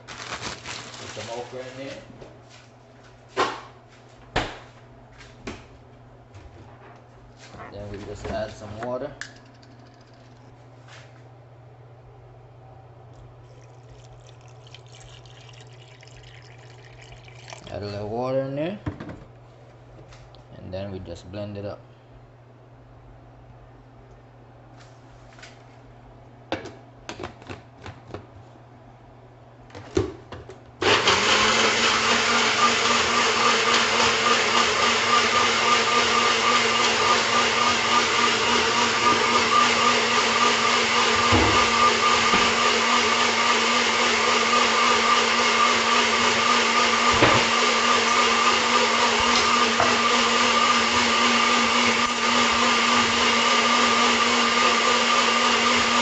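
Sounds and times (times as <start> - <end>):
blender motor running: 30.8 - 56.0.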